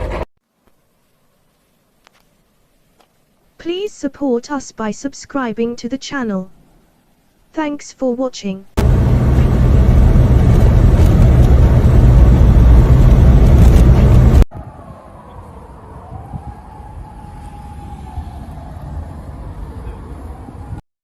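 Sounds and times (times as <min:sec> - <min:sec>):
quiet low rumble with faint tone: 0:08.8 - 0:14.4
loud deep rumbling: 0:08.8 - 0:14.5.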